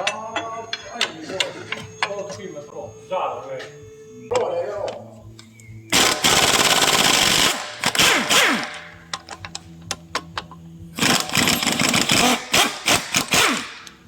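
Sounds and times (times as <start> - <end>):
impact wrench hammering: 5.9 - 14.0
metallic clicks: 8.6 - 11.9.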